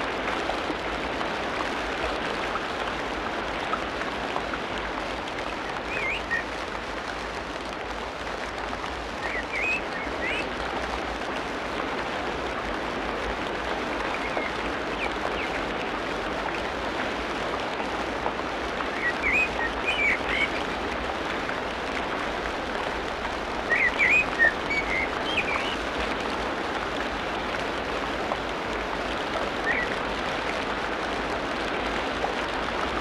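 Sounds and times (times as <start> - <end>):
rain hissing: 0.0 - 33.0
birds chirping and whistling: 23.7 - 25.7.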